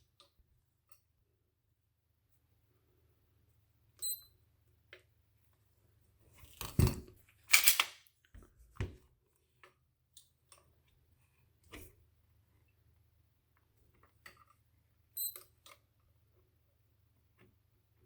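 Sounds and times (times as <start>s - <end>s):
pistol clicks and clacks: 7.5s - 8.0s.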